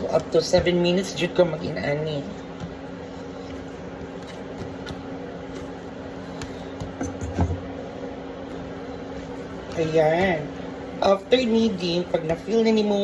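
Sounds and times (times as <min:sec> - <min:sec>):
dough kneading knocks: 0:00.0 - 0:07.7
steady low hum: 0:00.0 - 0:13.0.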